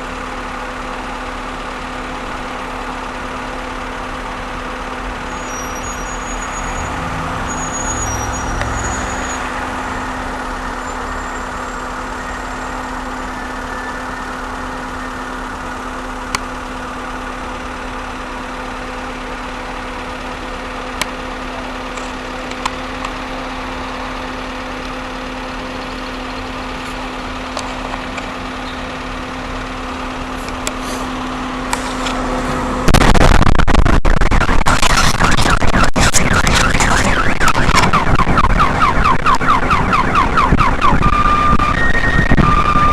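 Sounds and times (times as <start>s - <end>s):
loud boom with crackles: 32.9s - 38.6s.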